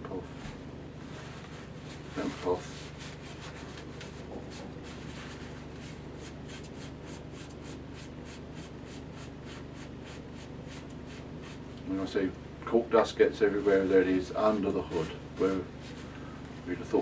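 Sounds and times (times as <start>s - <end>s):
cloth rubbing on cork: 1.0s - 11.6s.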